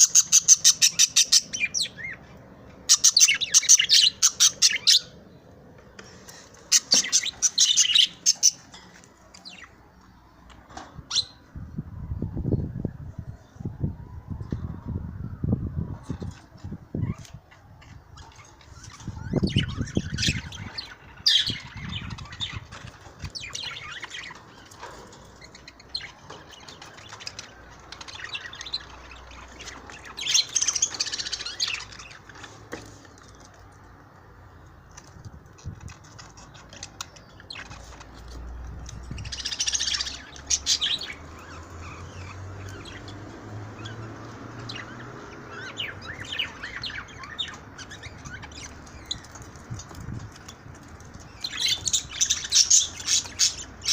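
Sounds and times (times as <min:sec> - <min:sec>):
budgerigars chirping: 0:00.0 - 0:02.2, 0:02.8 - 0:05.2, 0:06.7 - 0:08.6, 0:17.0 - 0:32.5, 0:35.6 - 0:50.6, 0:51.2 - 0:53.9.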